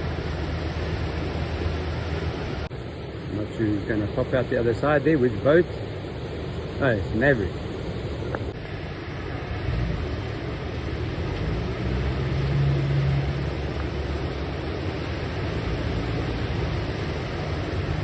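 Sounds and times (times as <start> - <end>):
low hum of boat engines: 0.0 - 18.0
surf rushing: 0.0 - 18.0.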